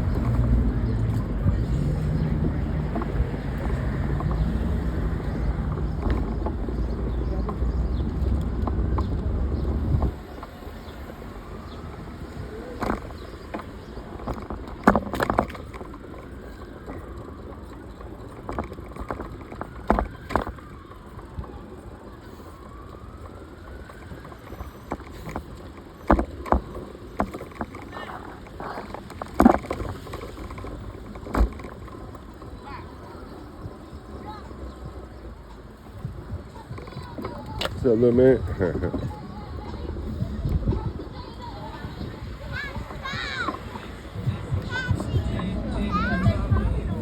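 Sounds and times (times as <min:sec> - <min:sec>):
background traffic: 0:00.0 - 0:47.0
sharp clicks and knocks: 0:23.9 - 0:32.5.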